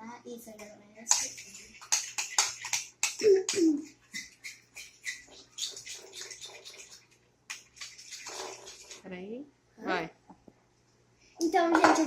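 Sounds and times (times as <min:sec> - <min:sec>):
spoon stirring sticky slime: 0:01.1 - 0:09.0.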